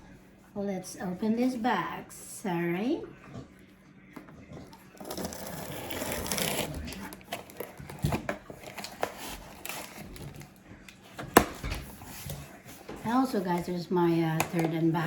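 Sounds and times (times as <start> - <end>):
cardboard rustling and tearing: 5.0 - 13.7
box handling clicks and knocks: 6.2 - 10.4, 11.1 - 13.7, 14.3 - 14.8.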